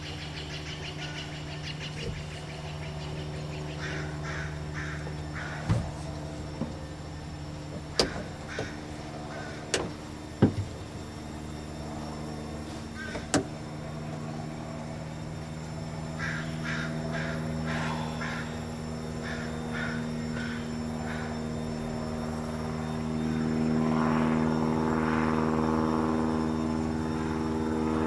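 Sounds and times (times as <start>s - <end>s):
propeller aircraft engine drone: 0.0s - 28.0s
sharp knocks: 9.7s - 10.7s.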